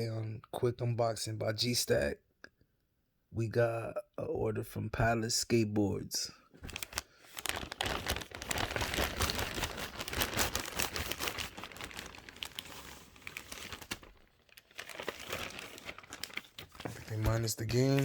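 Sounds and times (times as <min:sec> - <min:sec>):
packaging crinkling: 0:06.6 - 0:18.0.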